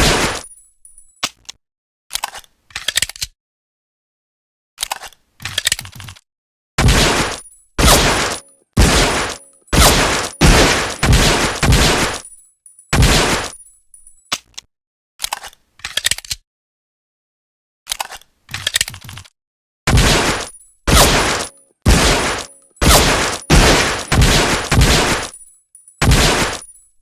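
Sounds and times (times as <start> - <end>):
pistol shots with echo: 6.9 - 12.3, 19.9 - 25.4, 26.0 - 26.7
metallic clicks: 9.2 - 16.4.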